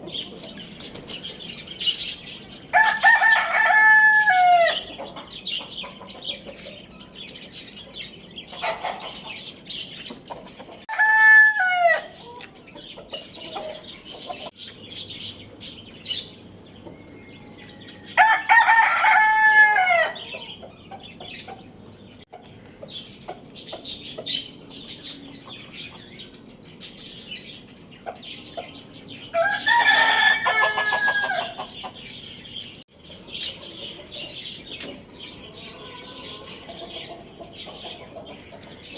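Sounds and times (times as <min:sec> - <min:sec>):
chicken clucking and chirps: 0:00.0 - 0:38.9
rooster crowing: 0:02.7 - 0:04.9, 0:10.9 - 0:12.1, 0:18.0 - 0:20.3, 0:29.4 - 0:31.7.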